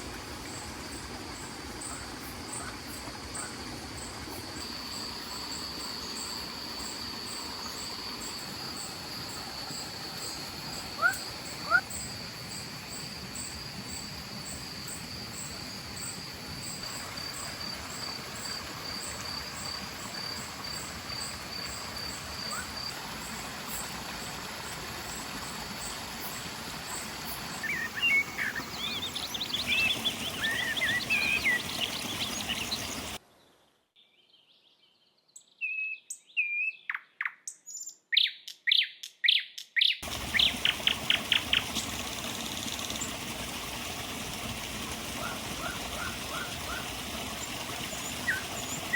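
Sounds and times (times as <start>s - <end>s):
stream rushing: 0.0s - 33.2s, 40.0s - 48.9s
insects trilling: 0.4s - 33.2s, 40.0s - 48.9s
birds chirping: 1.3s - 14.0s, 27.5s - 33.2s, 39.3s - 48.9s
pulsed insect chirping: 4.0s - 23.3s.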